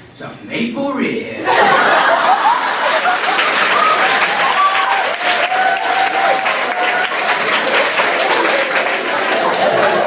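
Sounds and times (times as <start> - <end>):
audience applauding: 2.1 - 10.0.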